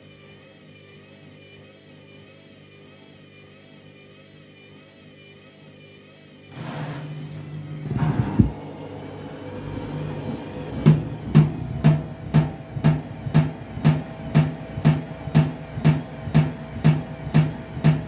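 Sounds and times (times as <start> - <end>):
washing machine drum banging: 10.8 - 18.0.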